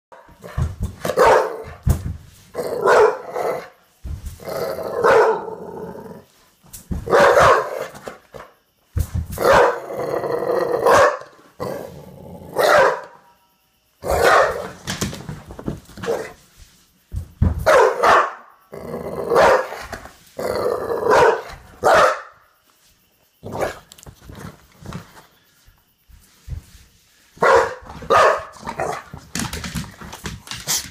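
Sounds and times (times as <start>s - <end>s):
dog barking excitedly: 0.1s - 1.8s, 2.6s - 3.7s, 4.9s - 5.6s, 7.0s - 8.5s, 9.4s - 9.9s, 10.8s - 11.4s, 12.5s - 13.2s, 14.0s - 14.8s, 17.6s - 18.5s, 19.3s - 19.9s, 21.0s - 22.4s, 27.4s - 29.1s.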